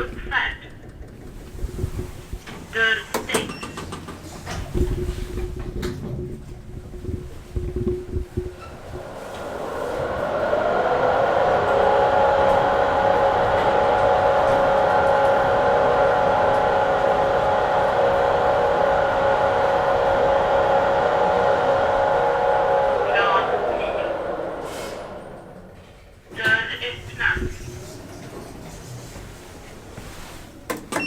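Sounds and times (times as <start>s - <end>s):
elevator motor whine: 8.2s - 28.6s.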